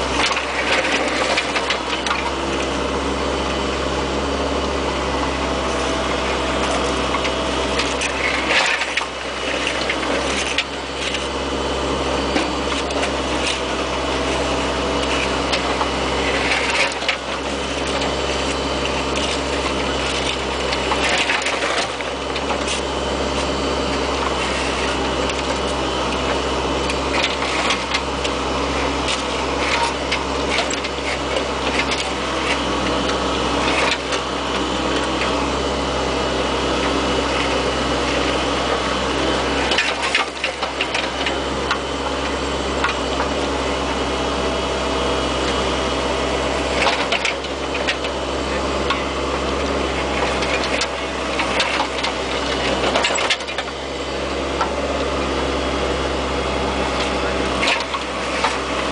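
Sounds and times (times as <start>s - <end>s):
diesel engine running: 0.0s - 58.9s.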